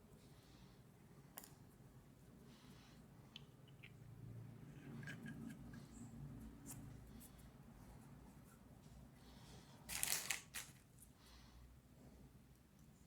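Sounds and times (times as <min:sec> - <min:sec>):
small parts clicking and scratching: 0:09.9 - 0:11.1.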